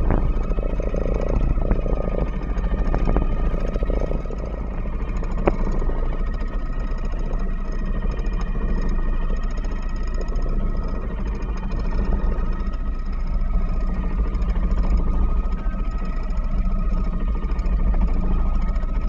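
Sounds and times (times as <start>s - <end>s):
boat engine running: 0.0s - 19.0s.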